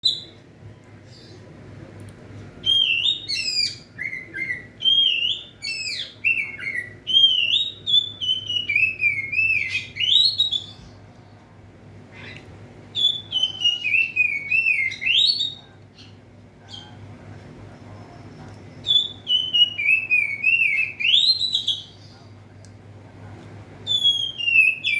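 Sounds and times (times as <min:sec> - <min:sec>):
faint low hum: 0:00.0 - 0:24.9
songbird whistled phrases: 0:02.6 - 0:11.0, 0:12.2 - 0:17.0, 0:18.8 - 0:22.1, 0:23.8 - 0:24.9.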